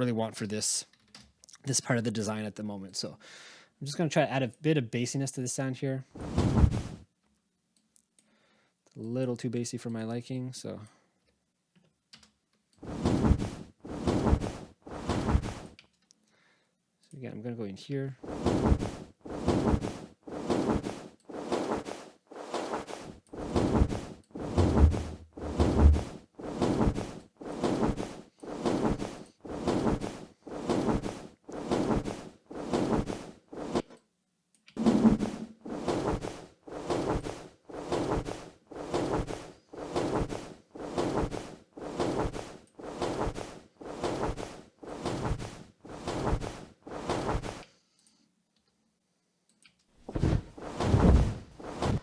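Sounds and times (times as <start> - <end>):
whooshing wing flaps: 6.2 - 7.0, 12.8 - 15.8, 18.2 - 33.9, 34.8 - 47.6, 50.1 - 52.0
low thumps: 23.4 - 27.0.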